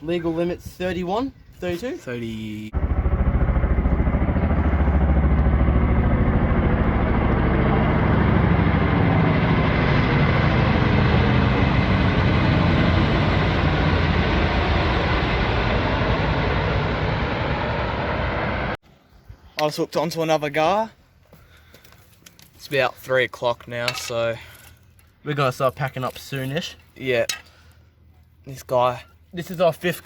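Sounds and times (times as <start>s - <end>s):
motor engine running: 2.8s - 18.5s.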